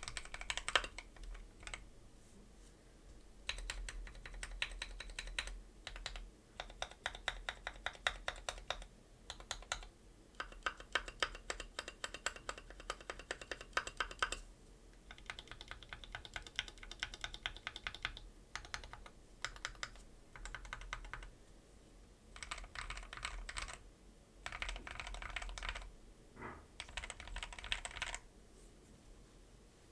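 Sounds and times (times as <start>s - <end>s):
mechanical keyboard typing: 0.0s - 1.8s, 3.4s - 14.4s, 15.0s - 21.3s, 22.4s - 23.8s, 24.4s - 25.9s, 26.8s - 28.2s.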